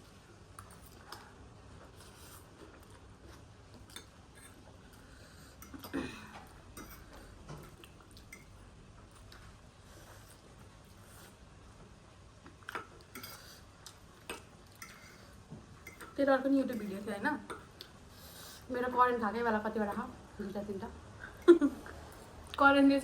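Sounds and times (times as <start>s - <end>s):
chewing: 0.5s - 11.4s.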